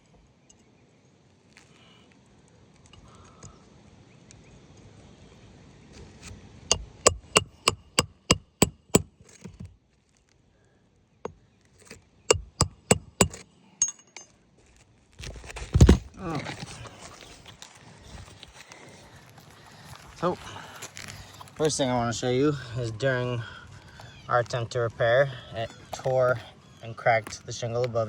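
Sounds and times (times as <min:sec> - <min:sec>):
hammer striking shingle roof: 0:06.7 - 0:09.7, 0:12.3 - 0:13.4.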